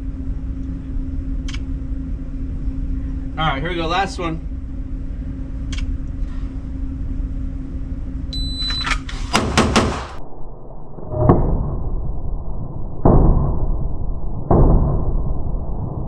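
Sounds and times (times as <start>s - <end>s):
shot timer beep: 8.3s - 8.9s
dull longer bangs: 9.3s - 10.2s
pistol gunshots: 9.3s - 10.2s.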